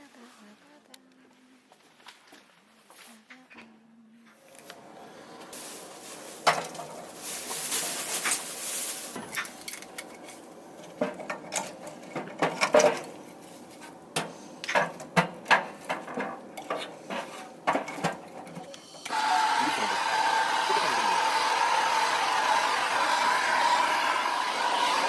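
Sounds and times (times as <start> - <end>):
hissing rustle: 4.4 - 11.0
metal stove parts clinking: 9.2 - 18.8.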